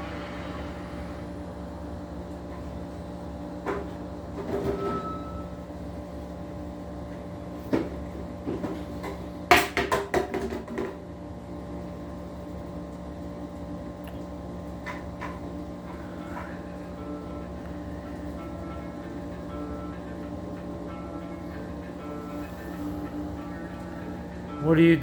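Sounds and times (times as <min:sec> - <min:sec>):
household appliance hum: 0:00.0 - 0:25.0.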